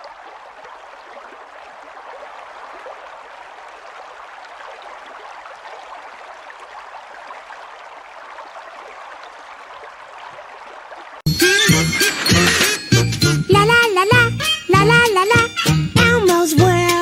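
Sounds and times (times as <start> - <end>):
children's music with jingling bells: 11.3 - 17.0.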